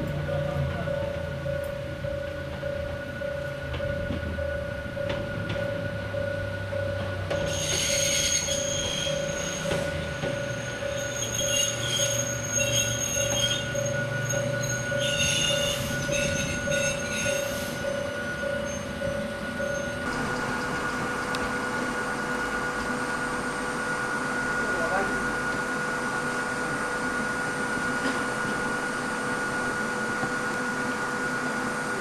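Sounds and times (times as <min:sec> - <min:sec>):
train motor rumble: 0:00.0 - 0:32.0
warning bell ringing: 0:00.1 - 0:27.9
train wheels squealing: 0:07.1 - 0:21.3.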